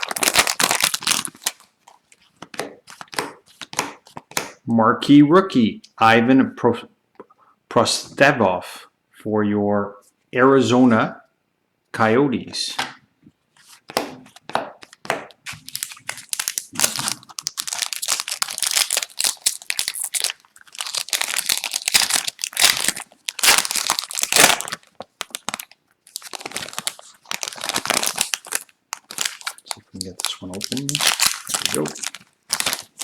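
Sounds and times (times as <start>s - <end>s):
foil wrapper crinkling and tearing: 0.0s - 4.2s, 13.7s - 33.0s.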